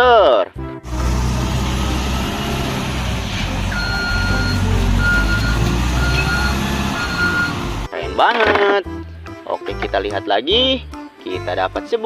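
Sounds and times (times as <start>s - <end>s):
truck engine rumbling: 0.8s - 7.9s
reversing alarm beeping: 3.6s - 7.9s.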